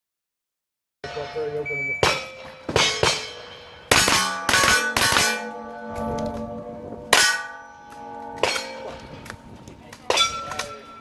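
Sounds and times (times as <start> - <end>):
steel target ringing: 1.0 - 11.0
gunshots: 3.9 - 5.6.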